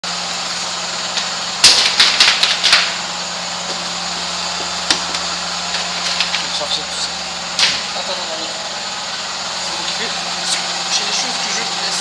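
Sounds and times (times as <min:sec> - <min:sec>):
tumble dryer hum: 0:00.0 - 0:12.0
sharp clicks and knocks: 0:03.6 - 0:06.6, 0:07.6 - 0:07.9.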